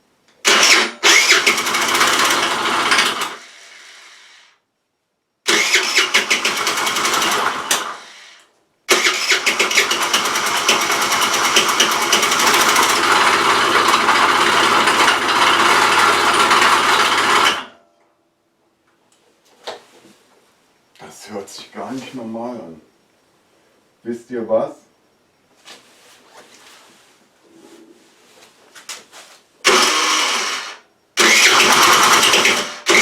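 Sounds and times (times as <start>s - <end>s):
scooter engine starting: 0.4s - 4.1s, 5.5s - 8.3s, 8.9s - 17.8s, 29.6s - 33.0s
scooter engine rattling: 0.5s - 3.4s, 5.5s - 8.0s, 8.9s - 17.7s, 29.7s - 33.0s.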